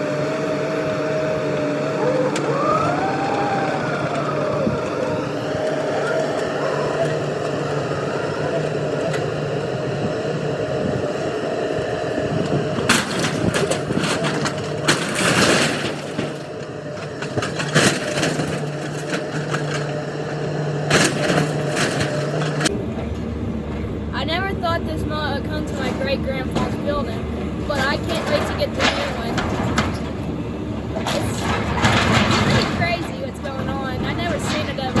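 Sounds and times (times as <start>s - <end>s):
excavator engine running: 0.0s - 35.0s
wood cracking and splintering: 12.8s - 22.8s.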